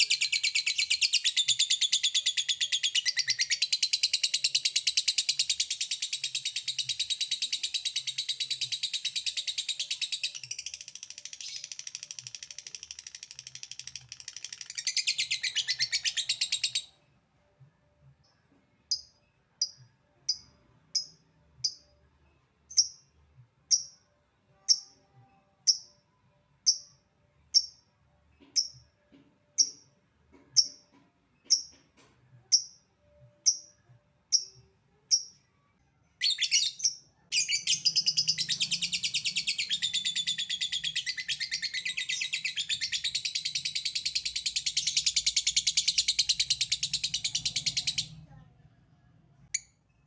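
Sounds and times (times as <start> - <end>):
lovebird chirping and chattering: 0.0 - 17.0, 22.7 - 23.1, 24.6 - 25.0, 33.4 - 35.4, 36.2 - 48.2.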